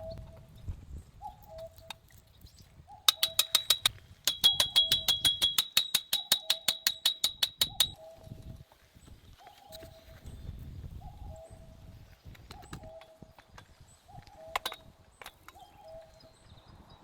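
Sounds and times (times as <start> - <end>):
fast sharp ticking bird notes: 3.1 - 8.0.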